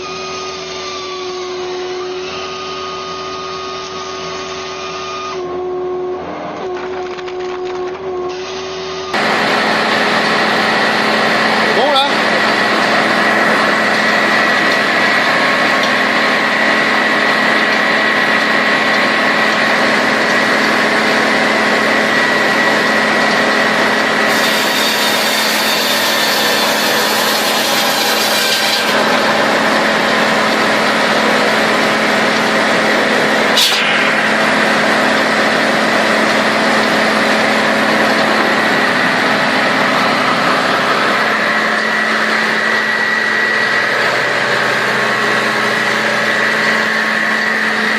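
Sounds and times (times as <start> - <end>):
chainsaw cutting wood: 9.1 - 37.1.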